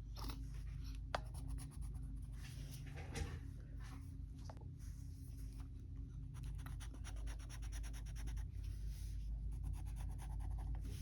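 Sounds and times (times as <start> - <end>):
faint low hum: 0.0 - 11.0
pencil scratching on paper: 6.4 - 8.5, 9.5 - 11.0.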